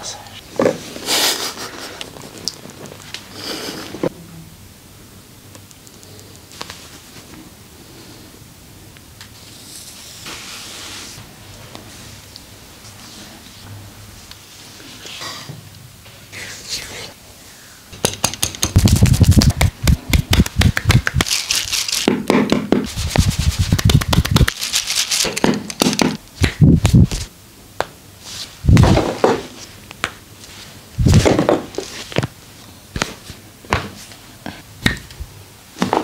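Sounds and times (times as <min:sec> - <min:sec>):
hands slapping skin: 0:18.0 - 0:21.3, 0:23.6 - 0:27.2, 0:34.8 - 0:35.1.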